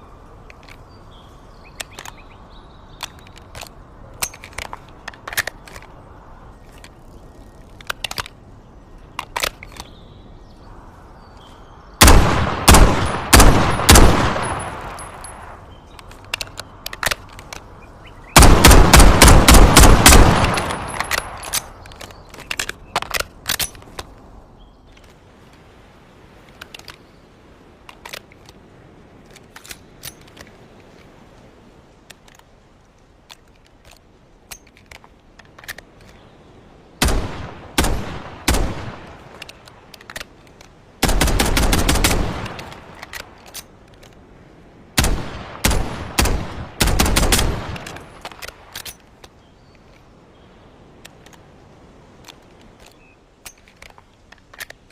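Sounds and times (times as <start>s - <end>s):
pistol gunshots: 12.0s - 14.9s, 18.4s - 21.4s.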